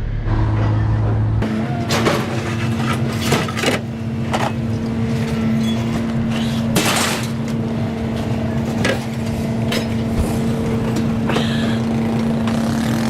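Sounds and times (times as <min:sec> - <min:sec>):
vehicle engine running: 0:04.0 - 0:13.0
brief rushing noise: 0:10.0 - 0:12.4.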